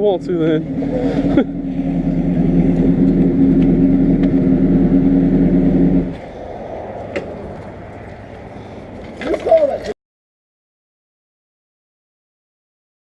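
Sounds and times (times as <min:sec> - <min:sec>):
motorcycle engine running: 0:00.0 - 0:06.2.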